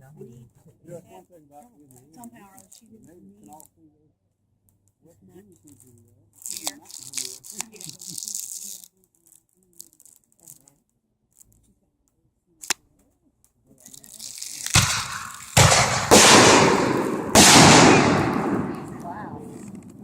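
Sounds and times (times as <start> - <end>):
firework crackling: 14.0 - 20.0
firework bangs: 14.6 - 20.0.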